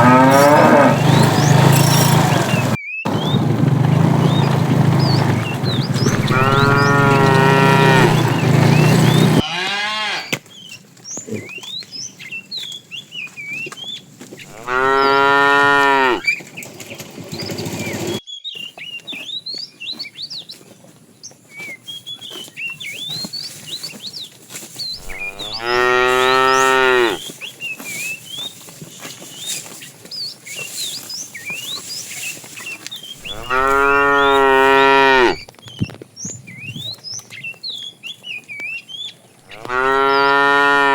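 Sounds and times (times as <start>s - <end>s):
cows mooing: 0.0s - 10.3s, 14.5s - 16.3s, 25.0s - 27.2s, 33.2s - 35.4s, 39.5s - 40.9s.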